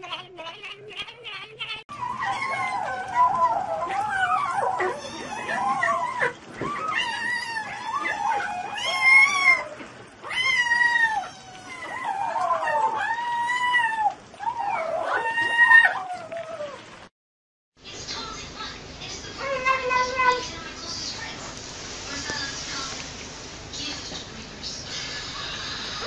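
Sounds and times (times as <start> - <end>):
cat yowling: 0.0 - 16.8.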